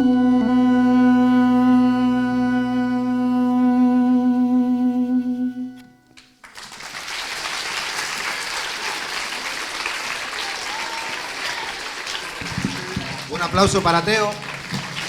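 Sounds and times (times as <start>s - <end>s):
audience applause: 6.4s - 15.0s.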